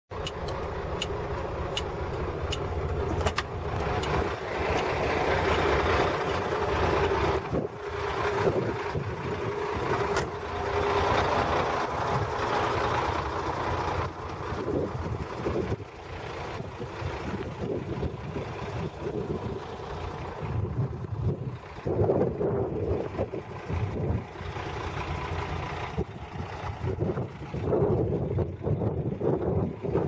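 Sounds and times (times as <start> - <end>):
vehicle engine and road rumble: 0.1 - 30.0
high ticks: 0.2 - 7.4.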